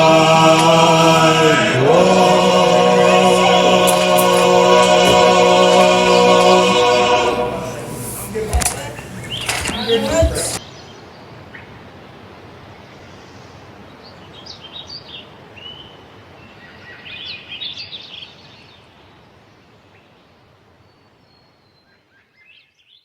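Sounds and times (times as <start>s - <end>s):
birds chirping: 3.0s - 10.6s.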